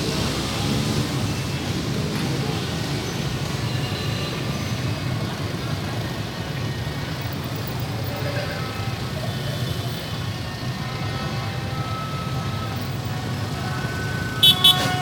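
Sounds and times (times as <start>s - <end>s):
many motorbike engines running: 0.0s - 15.0s.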